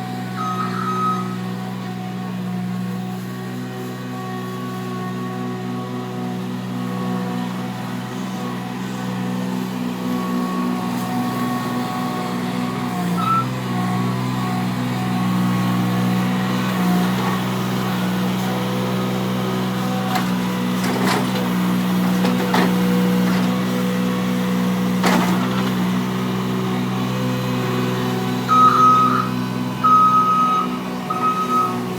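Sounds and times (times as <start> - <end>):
skid steer engine running: 0.0 - 31.9
reversing beeper: 0.3 - 1.6, 13.2 - 13.6, 28.5 - 31.9.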